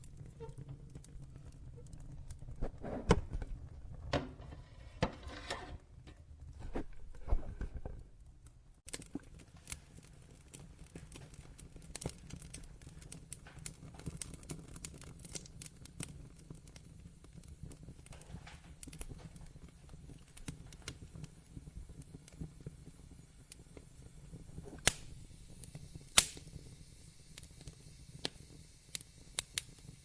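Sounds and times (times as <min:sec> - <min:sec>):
wood fire crackling: 0:00.0 - 0:30.0.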